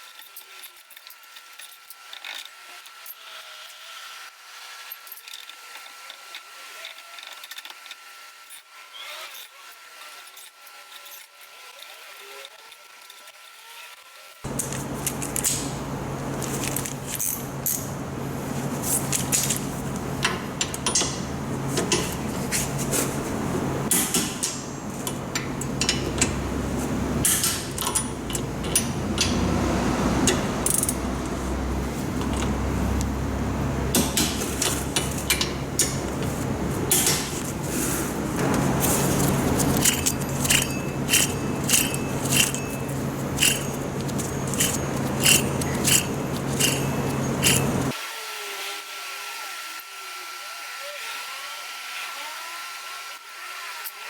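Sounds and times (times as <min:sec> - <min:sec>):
steady low hum: 0:14.5 - 0:47.9
metal tools clinking and clattering: 0:38.3 - 0:47.9.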